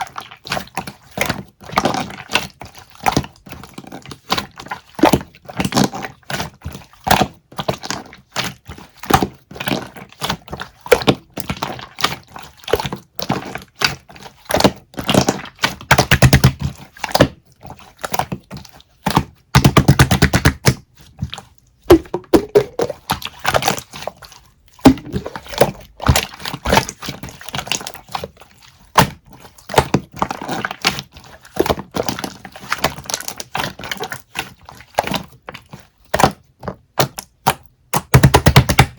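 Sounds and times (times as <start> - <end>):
sharp knocks and taps: 21.9 - 22.9, 24.9 - 25.4.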